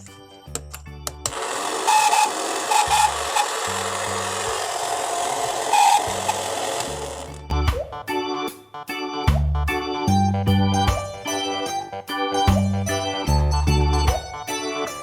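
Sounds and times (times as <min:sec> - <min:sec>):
background music with bass: 0:00.0 - 0:01.3, 0:05.4 - 0:15.0
tool rasping material: 0:01.3 - 0:07.4.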